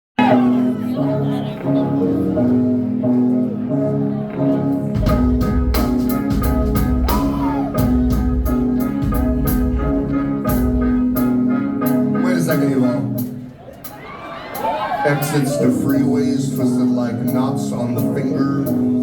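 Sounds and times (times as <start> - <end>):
deep bass: 4.9 - 12.5
drums with cymbal strokes: 5.0 - 9.8.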